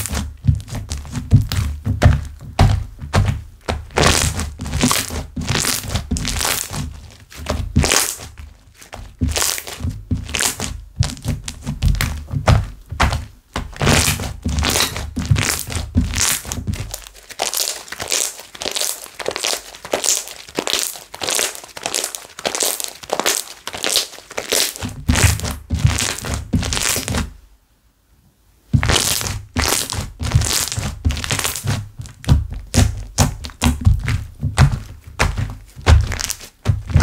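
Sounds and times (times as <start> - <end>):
low thuds: 0.3 - 4.9
slime squished by hand: 12.0 - 27.2, 28.8 - 37.0.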